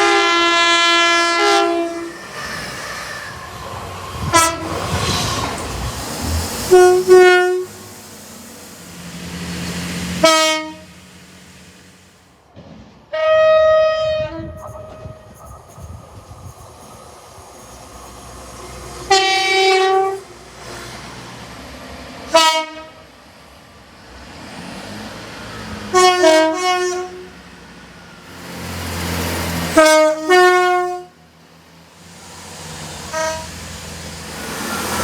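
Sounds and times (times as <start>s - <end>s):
train horn blasts: 0.0s - 2.4s, 4.2s - 4.8s, 6.7s - 7.9s, 10.2s - 11.0s, 13.1s - 15.4s, 19.1s - 20.4s, 22.3s - 23.0s, 25.9s - 27.4s, 29.7s - 31.2s, 33.1s - 33.6s
train rumble: 0.0s - 35.0s.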